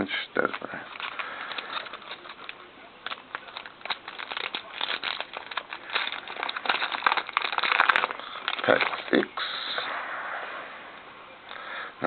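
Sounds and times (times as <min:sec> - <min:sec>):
cards being handled: 0:00.4 - 0:09.2
wrapper crinkling and tearing: 0:00.4 - 0:09.3.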